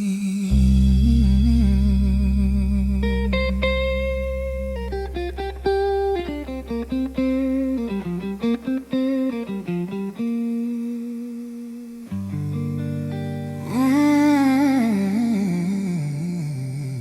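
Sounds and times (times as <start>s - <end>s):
bass note: 0.5s - 8.9s
blues guitar solo: 3.0s - 16.1s.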